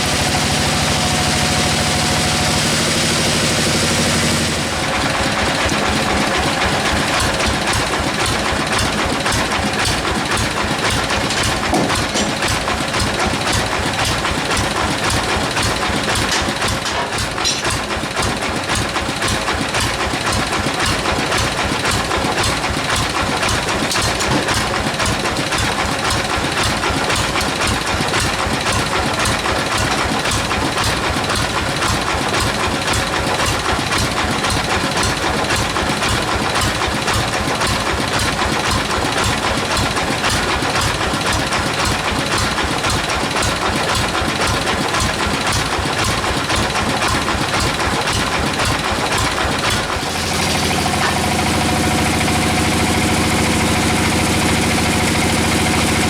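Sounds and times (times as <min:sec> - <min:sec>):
sawmill saw running: 0:00.0 - 0:56.0.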